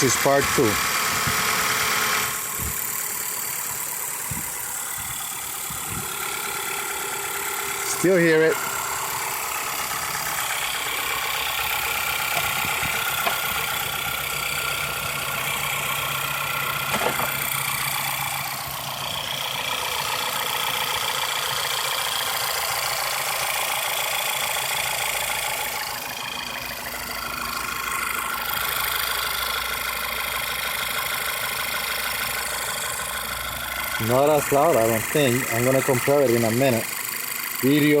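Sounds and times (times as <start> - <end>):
car engine idling: 0.0 - 38.0
rapid engine ticking: 0.0 - 38.0.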